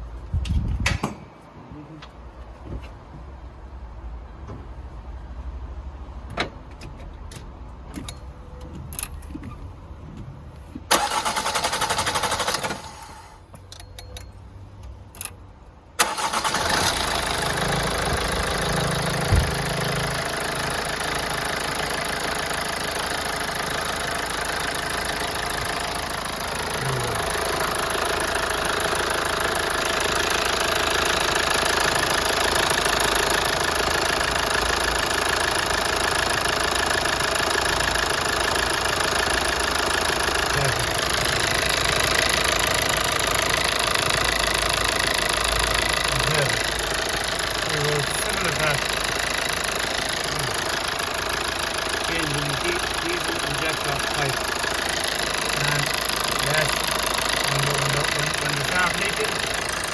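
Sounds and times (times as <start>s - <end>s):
diesel engine starting and idling: 4.7s - 59.9s.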